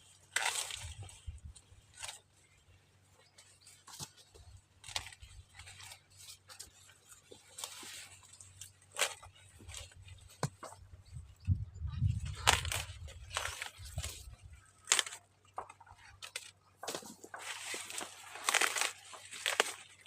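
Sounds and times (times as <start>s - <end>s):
dry corn leaves rustling: 0.0s - 20.0s.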